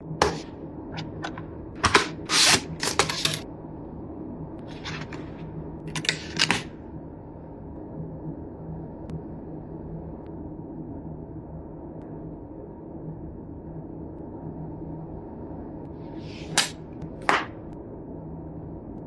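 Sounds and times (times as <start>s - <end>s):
cardboard and plastic packaging rustling: 1.0s - 3.4s, 4.7s - 6.7s.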